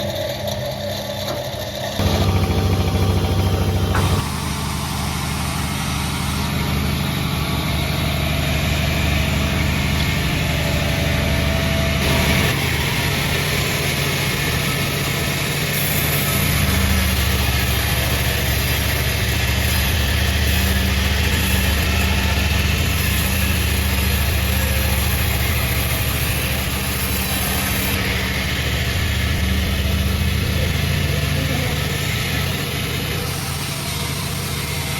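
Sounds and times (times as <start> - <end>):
sawmill machinery hum: 0.0 - 34.9.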